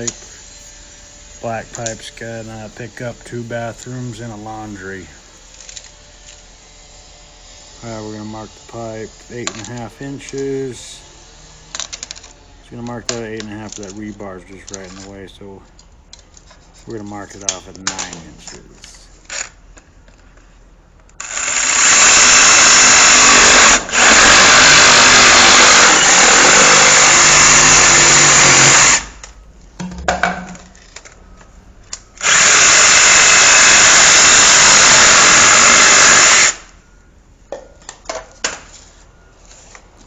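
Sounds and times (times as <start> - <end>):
power saw cutting plastic pipe: 0.0 - 4.8, 5.5 - 15.2, 21.2 - 29.2, 32.2 - 36.7.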